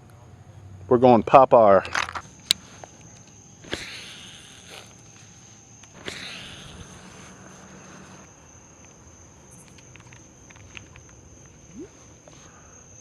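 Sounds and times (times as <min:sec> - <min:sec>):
insects chirring: 0:00.0 - 0:13.0
sharp click: 0:01.9 - 0:04.7
hiss: 0:03.6 - 0:08.3.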